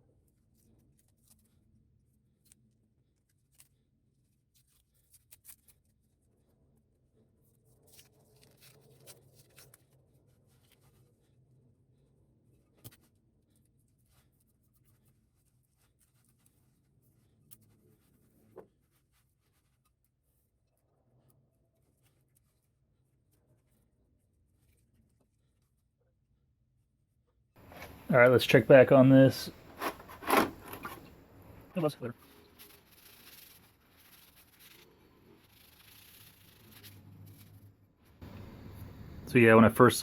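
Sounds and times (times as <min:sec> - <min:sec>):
faint scratching: 0:27.6 - 0:39.0.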